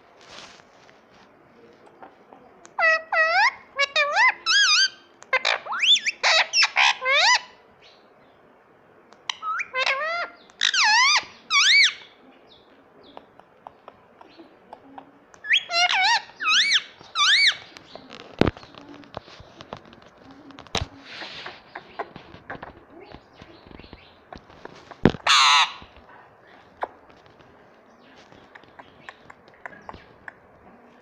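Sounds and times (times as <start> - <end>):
parakeet chirping: 2.8 - 7.5, 9.3 - 12.0, 15.4 - 18.7.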